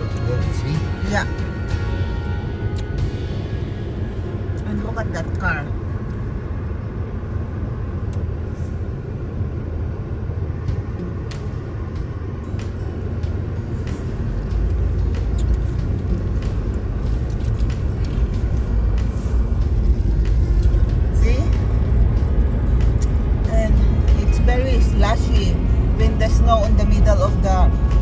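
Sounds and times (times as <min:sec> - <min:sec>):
car road noise on wet road: 0:00.0 - 0:28.0.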